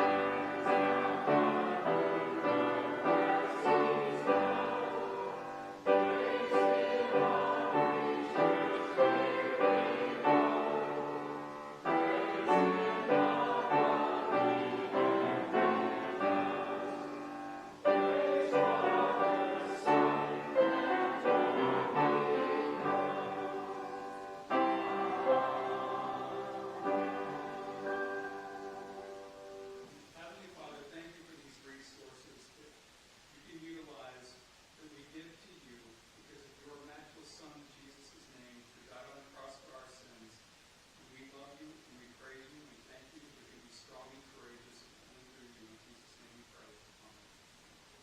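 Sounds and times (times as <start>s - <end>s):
slow hymn-like piano: 0.0s - 31.1s.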